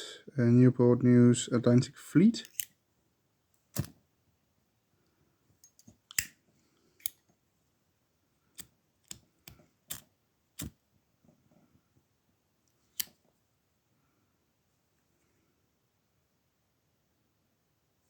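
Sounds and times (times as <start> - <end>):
lighter metallic clicks: 6.1 - 6.4.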